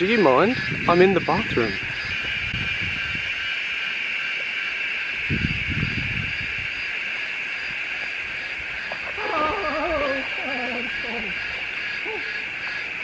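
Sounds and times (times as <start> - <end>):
insect chorus trilling: 0.0 - 13.0.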